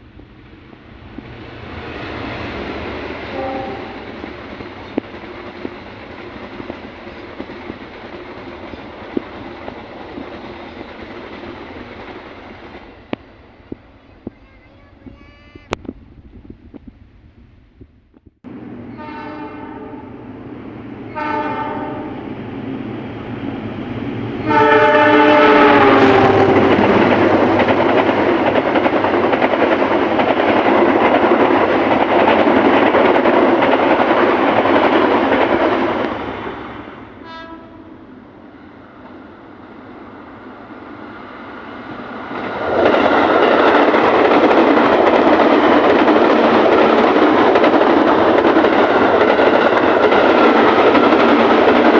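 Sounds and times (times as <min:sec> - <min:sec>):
train passing on rails: 0:00.0 - 0:51.9
train horn blasts: 0:03.3 - 0:04.1, 0:18.9 - 0:20.1, 0:21.1 - 0:22.2, 0:24.4 - 0:27.2, 0:37.2 - 0:38.1.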